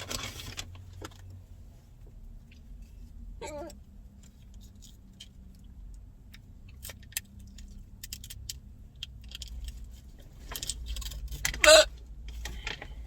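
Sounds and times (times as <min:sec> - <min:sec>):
low steady rumble: 0:00.0 - 0:13.0
girl hiccuping: 0:03.4 - 0:03.8, 0:11.6 - 0:11.9
small clicks and rattles: 0:04.1 - 0:11.6.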